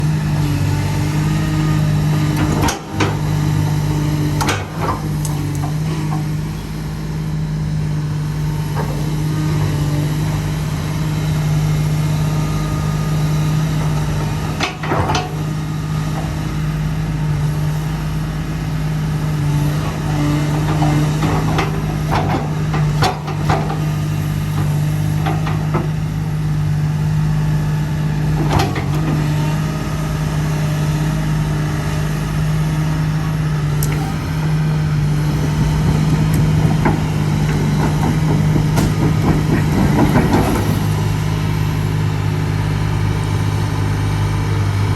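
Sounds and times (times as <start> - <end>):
diesel engine idling: 29.5 - 44.9.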